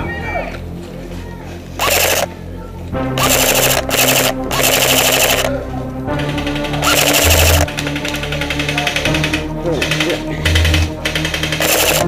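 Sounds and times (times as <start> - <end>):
background music: 0.0 - 12.0
airsoft rifle full-auto bursts: 1.8 - 2.3, 3.2 - 5.5, 6.2 - 12.0.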